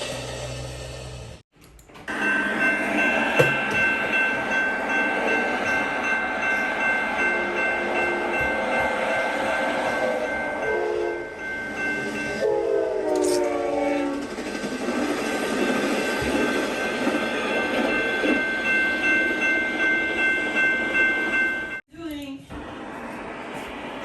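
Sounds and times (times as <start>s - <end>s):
diesel train passing: 0.0s - 1.4s, 2.1s - 21.8s, 22.5s - 24.0s
train horn blasts: 7.3s - 11.4s, 12.4s - 14.2s.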